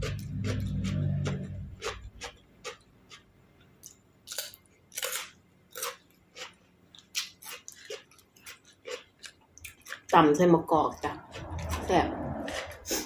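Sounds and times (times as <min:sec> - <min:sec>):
person chewing crunchy food: 0:00.0 - 0:10.2, 0:10.9 - 0:13.0.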